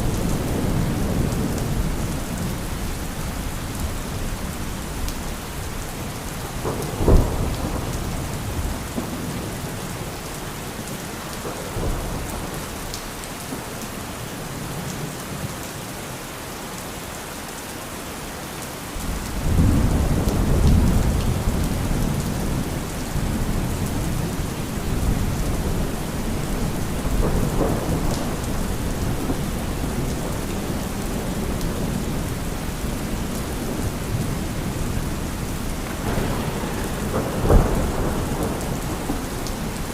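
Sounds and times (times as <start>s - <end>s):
low rumble of thunder: 0.0s - 10.3s, 19.0s - 39.9s
steady rain falling: 0.0s - 39.9s
thunder crack: 23.3s - 32.2s, 35.8s - 39.9s.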